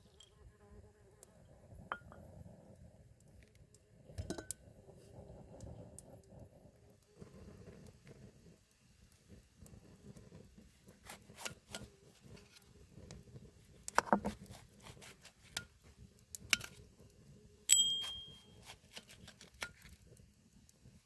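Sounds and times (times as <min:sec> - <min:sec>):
ringing metal clink: 0:17.7 - 0:18.6.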